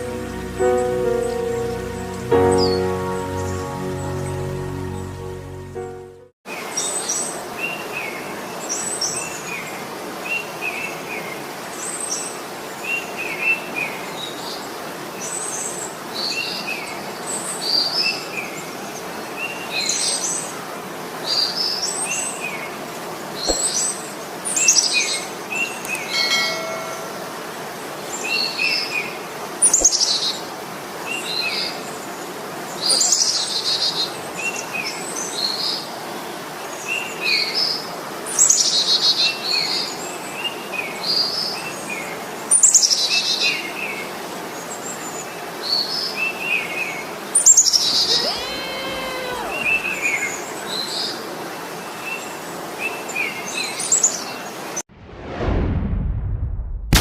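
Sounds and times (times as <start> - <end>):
steady background hiss: 0.0 - 54.8
low pitched bird call: 47.7 - 50.6.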